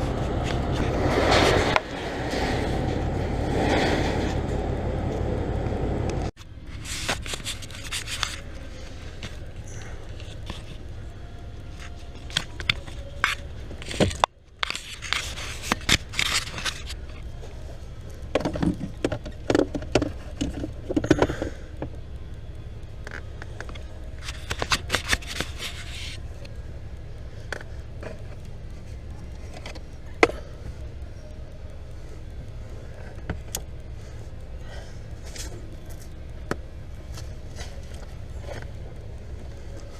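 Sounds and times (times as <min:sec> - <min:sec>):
steady low hum: 0:00.0 - 0:39.9
hands scraping plastic parts: 0:06.7 - 0:10.8, 0:11.7 - 0:17.2, 0:23.1 - 0:26.5.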